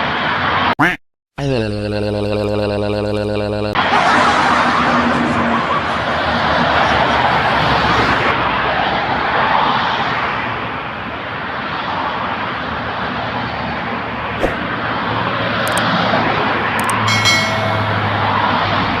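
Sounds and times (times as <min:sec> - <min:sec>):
road traffic rushing past: 0:03.8 - 0:19.0
short steady pitched tone: 0:16.8 - 0:18.5.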